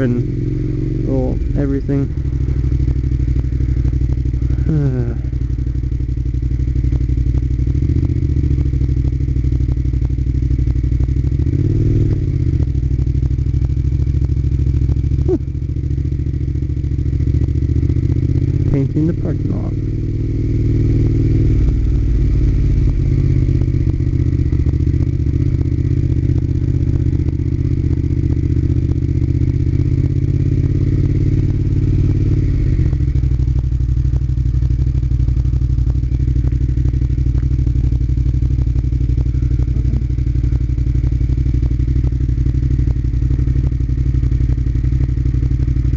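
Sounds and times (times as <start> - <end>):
motorcycle engine running: 0.0 - 45.9.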